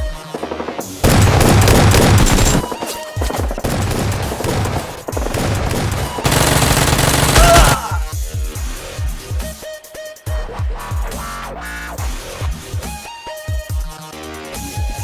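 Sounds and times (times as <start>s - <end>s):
background music: 0.0s - 15.0s
automatic gunfire bursts: 0.3s - 7.9s.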